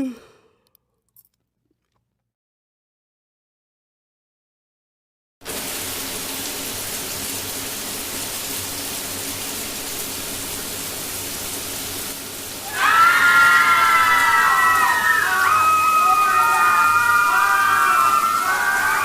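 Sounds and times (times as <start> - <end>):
rain-like hiss: 5.4 - 19.0.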